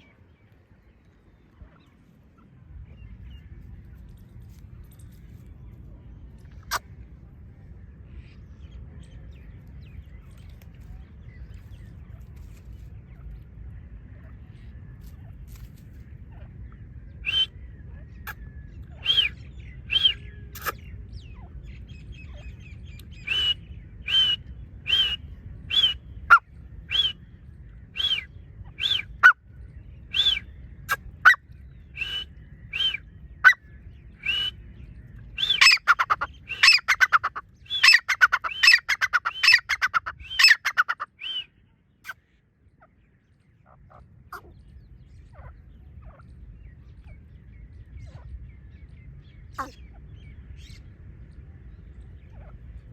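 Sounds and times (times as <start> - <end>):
low steady rumble: 0.0 - 52.9
partridge calling: 18.2 - 21.5, 22.1 - 27.2, 27.9 - 29.4, 30.0 - 42.2, 49.4 - 50.8.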